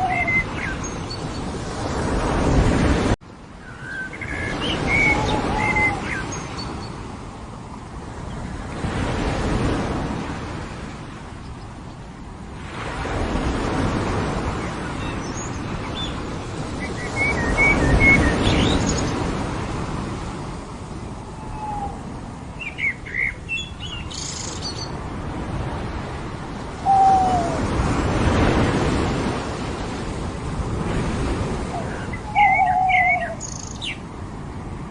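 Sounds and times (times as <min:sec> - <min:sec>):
birds chirping and calling: 0:00.0 - 0:01.4, 0:03.7 - 0:06.9, 0:26.8 - 0:27.7, 0:31.7 - 0:34.0
ocean waves breaking on beach: 0:00.0 - 0:34.9.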